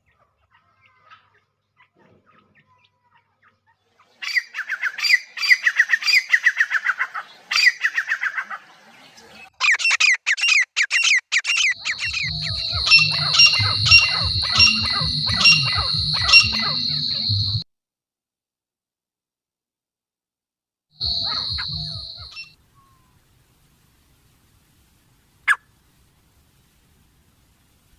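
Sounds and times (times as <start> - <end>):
francolin calling: 11.6 - 17.6, 21.0 - 23.0
low rhythmic throb with strokes: 11.8 - 17.6, 21.0 - 22.5
steady high whine: 11.8 - 17.6, 21.0 - 22.5.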